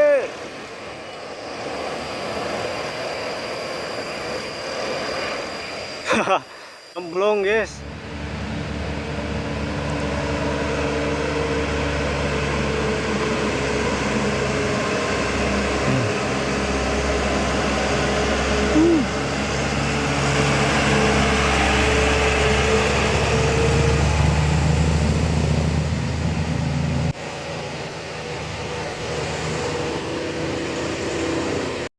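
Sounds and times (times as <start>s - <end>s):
bus diesel engine running: 7.7s - 31.9s.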